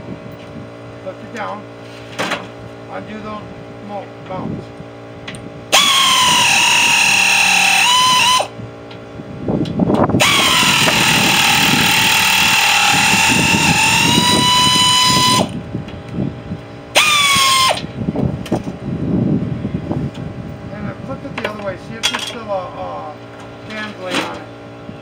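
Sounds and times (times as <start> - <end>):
cordless drill whine: 5.7 - 8.6, 10.2 - 15.6, 17.0 - 17.9.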